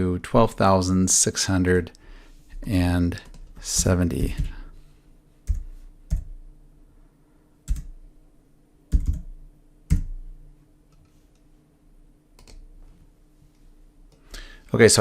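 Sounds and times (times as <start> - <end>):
keyboard and mouse clicks: 12.4 - 12.6.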